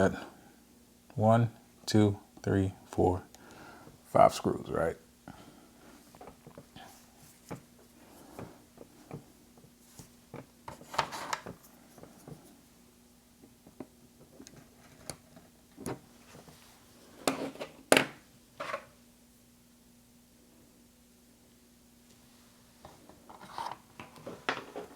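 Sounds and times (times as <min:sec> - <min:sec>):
faint steady hum: 0:00.0 - 0:24.9.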